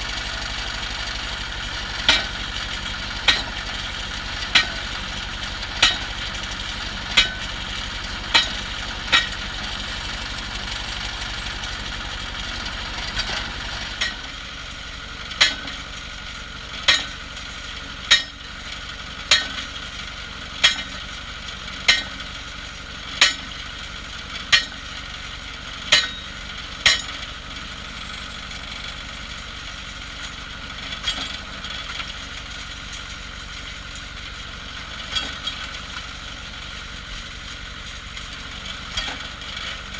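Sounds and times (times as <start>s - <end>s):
drilling rig engine running: 0.0s - 39.9s
sharp metallic clanks: 2.0s - 2.5s, 3.2s - 3.7s, 4.4s - 5.0s, 5.7s - 6.2s, 7.1s - 7.6s, 8.2s - 10.0s, 13.0s - 14.4s, 15.4s - 15.9s, 16.8s - 17.2s, 18.1s - 18.5s, 19.3s - 19.7s, 20.6s - 21.1s, 21.8s - 22.2s, 23.2s - 23.6s, 24.5s - 24.9s, 25.9s - 27.3s, 30.8s - 32.1s, 35.0s - 35.6s, 38.8s - 39.8s.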